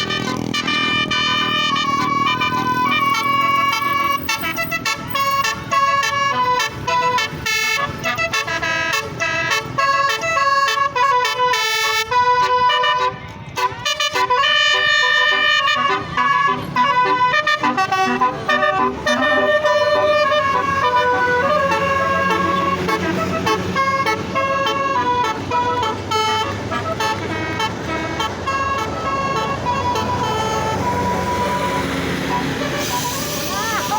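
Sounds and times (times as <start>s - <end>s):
multi-tone musical air horn: 0.0s - 33.9s.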